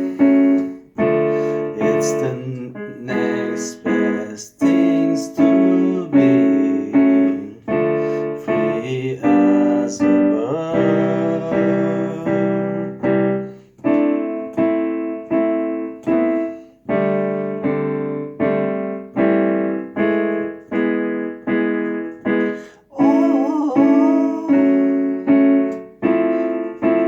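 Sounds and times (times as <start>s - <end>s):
piano chords: 0.0s - 27.0s
person singing: 1.8s - 7.7s, 8.4s - 13.0s, 22.5s - 25.4s.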